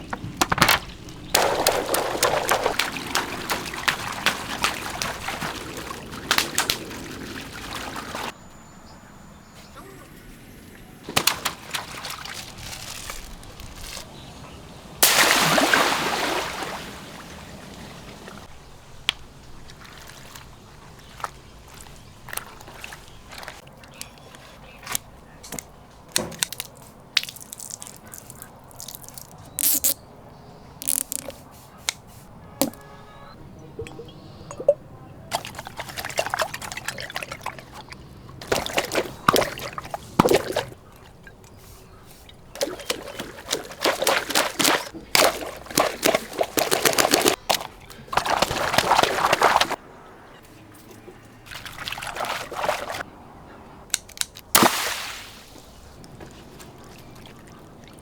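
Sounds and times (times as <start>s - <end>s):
water gushing: 0.0s - 8.4s, 15.0s - 18.5s, 42.6s - 47.4s, 48.1s - 49.8s
water splashing and sloshing: 0.0s - 8.4s, 10.3s - 29.7s, 32.1s - 53.4s, 54.1s - 58.0s.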